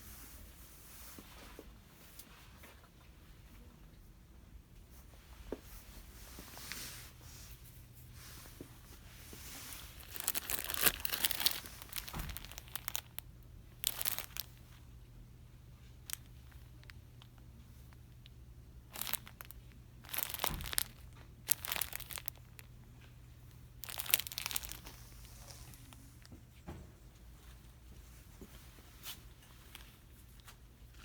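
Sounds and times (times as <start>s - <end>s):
packaging crinkling and rustling: 9.6s - 14.8s, 16.0s - 17.3s, 18.9s - 22.7s, 23.8s - 26.1s, 29.0s - 31.0s.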